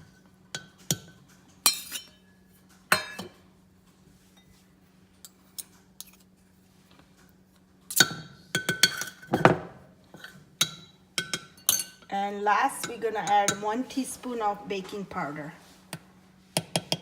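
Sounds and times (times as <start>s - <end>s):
metal spoon clinking in ceramic mug: 10.6s - 12.1s.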